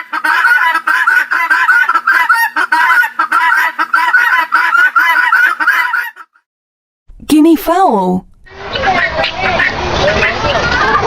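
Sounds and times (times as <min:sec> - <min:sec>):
guinea fowl calling: 0:00.0 - 0:06.4, 0:08.5 - 0:10.6.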